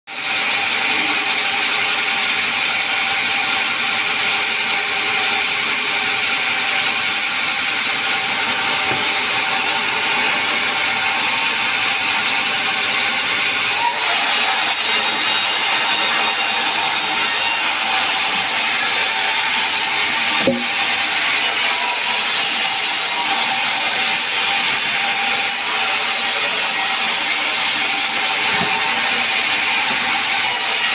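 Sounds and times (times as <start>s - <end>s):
sawmill saw cutting timber: 0.1s - 30.9s.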